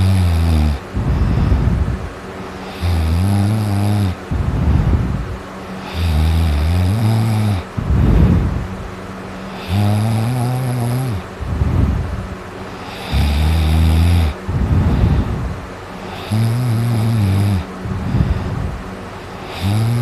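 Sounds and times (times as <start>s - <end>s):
loud snoring: 0.0s - 2.0s, 2.6s - 8.6s, 9.5s - 12.0s, 12.8s - 20.0s
breathy exhale: 0.8s - 3.1s, 14.2s - 16.6s, 17.6s - 20.0s.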